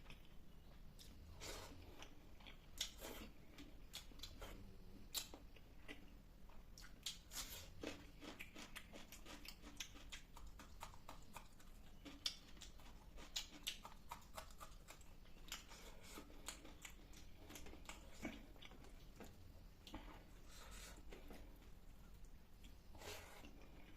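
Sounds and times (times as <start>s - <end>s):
soft chewing with wet mouth clicks: 0.0s - 23.9s.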